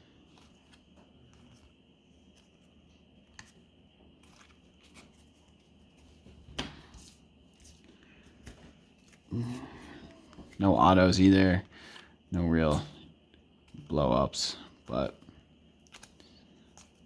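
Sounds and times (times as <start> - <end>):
trading cards clicking and rustling: 13.6 - 17.0.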